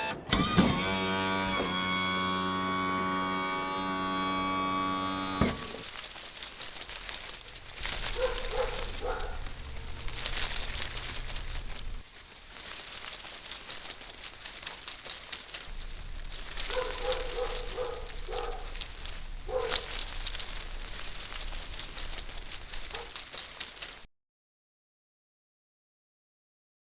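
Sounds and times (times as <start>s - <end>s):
crackling rustle: 0.3s - 24.1s
low rumble: 7.4s - 12.1s.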